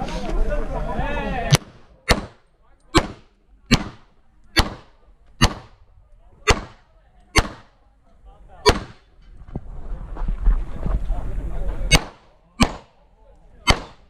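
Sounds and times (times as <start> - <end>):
handgun shots: 1.5 - 2.4, 3.0 - 5.8, 6.5 - 7.7, 8.7 - 9.0, 11.9 - 12.9, 13.7 - 14.0.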